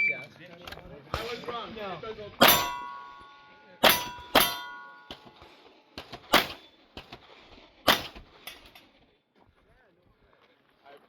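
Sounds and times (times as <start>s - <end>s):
faint pings: 2.4s - 5.5s
steel targets ringing: 2.4s - 6.8s, 7.9s - 8.8s
pistol shots: 3.8s - 5.3s, 6.0s - 6.7s, 7.9s - 8.3s.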